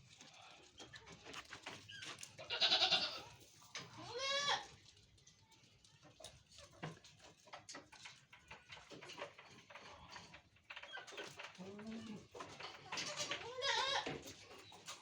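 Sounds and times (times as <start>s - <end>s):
goat bleating: 2.4s - 3.3s, 4.0s - 4.7s, 13.0s - 14.2s
faint knocks and rustles: 3.3s - 15.0s.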